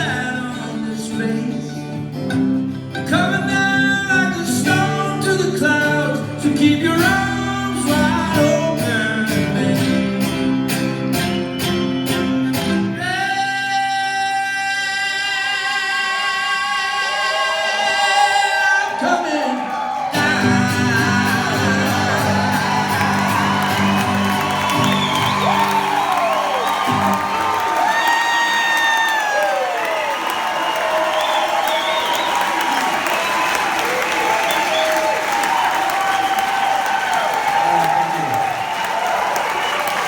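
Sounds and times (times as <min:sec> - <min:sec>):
man singing: 0:00.0 - 0:10.7, 0:12.0 - 0:25.6
strummed guitar: 0:00.0 - 0:14.6, 0:20.1 - 0:27.5
crowd cheering and whooping: 0:15.7 - 0:40.0.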